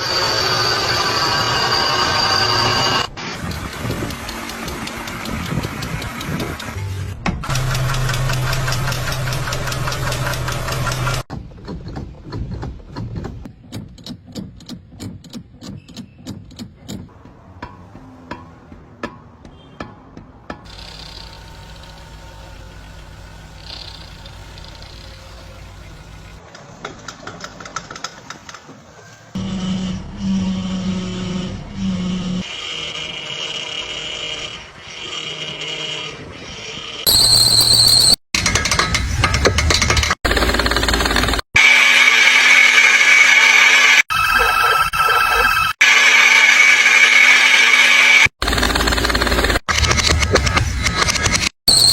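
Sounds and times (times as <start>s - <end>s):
vehicle low hum: 20.7s - 26.4s.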